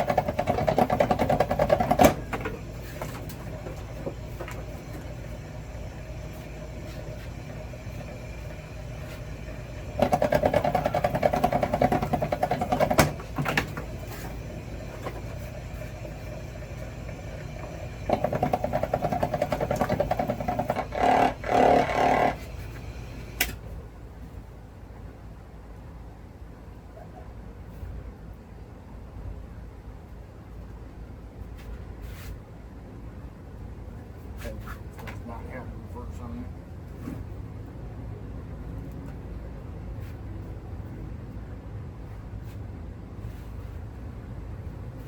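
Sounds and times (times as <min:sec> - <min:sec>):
fast-pulsing machine whir: 0:00.0 - 0:23.5
wire stripping machine hum: 0:00.0 - 0:23.6.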